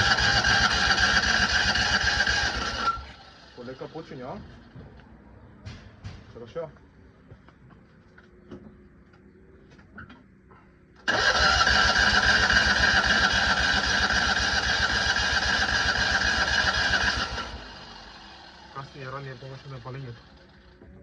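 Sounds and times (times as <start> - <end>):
car engine cranked by starter motor: 0.0 - 4.4, 11.0 - 20.8.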